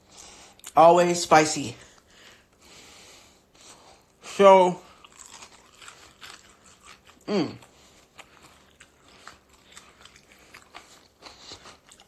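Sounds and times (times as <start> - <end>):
person chewing chicken wings: 4.8 - 12.0
person humming mmm: 7.2 - 7.7.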